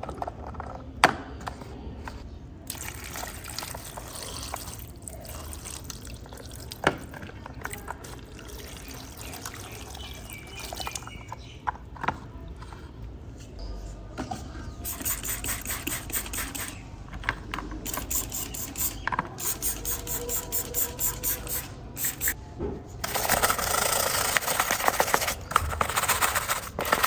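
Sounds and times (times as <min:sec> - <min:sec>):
water running and trickling: 0:02.7 - 0:11.2.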